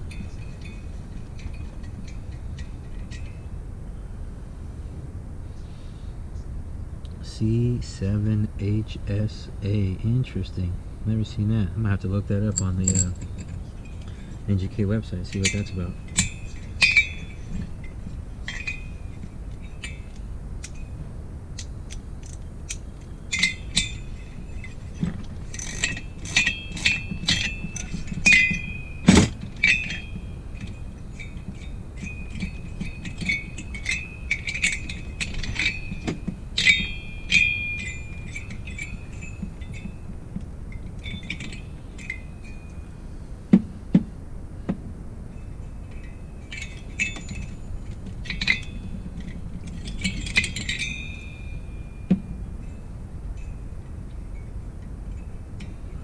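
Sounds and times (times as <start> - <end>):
metal clinks of hand tools: 0.0 - 3.5, 12.4 - 21.0, 21.6 - 40.1, 40.7 - 42.9, 45.3 - 56.0.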